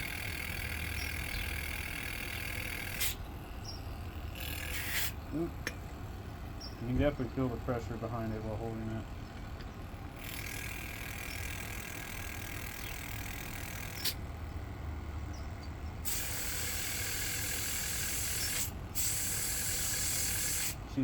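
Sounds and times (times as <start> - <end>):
aerosol spray hissing: 4.7 - 5.2, 16.1 - 20.8.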